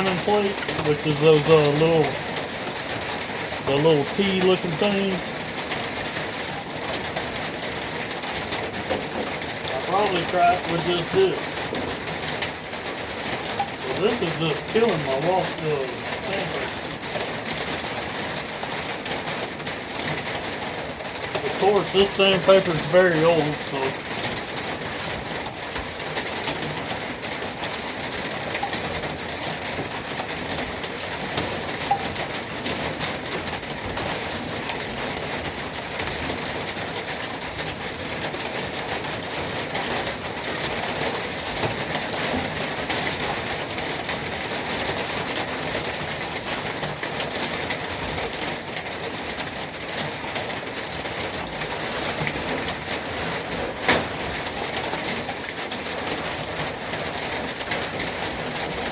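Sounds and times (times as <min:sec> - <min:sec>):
sandpaper rasping on metal: 0:51.6 - 0:55.0, 0:55.7 - 0:58.9.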